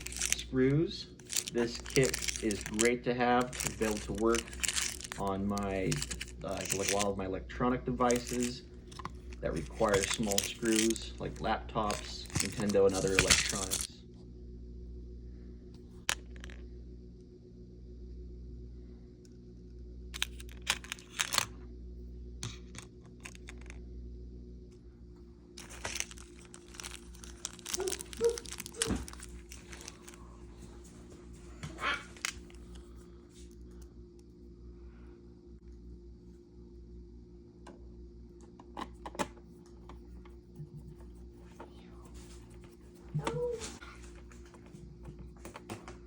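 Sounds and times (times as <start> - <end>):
screws clicking and rattling: 0.0 - 0.4, 1.2 - 7.1, 8.0 - 11.0, 11.9 - 13.9, 25.6 - 30.2
steady low hum: 0.0 - 46.0.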